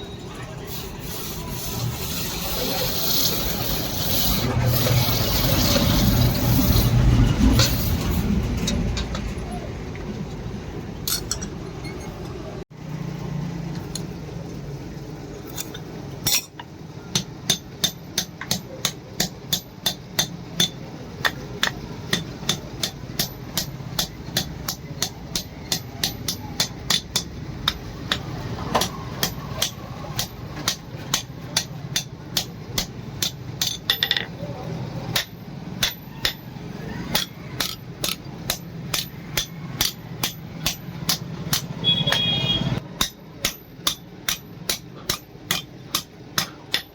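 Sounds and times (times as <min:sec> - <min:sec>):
hammer striking steel on anvil: 0:15.5 - 0:34.4, 0:35.1 - 0:46.9.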